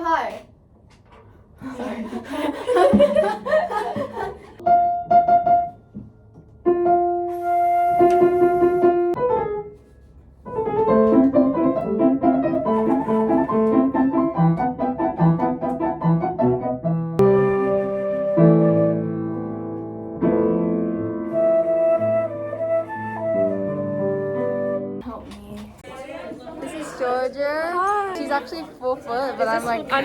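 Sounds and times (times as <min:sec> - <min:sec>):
piano playing: 0:04.6 - 0:25.0.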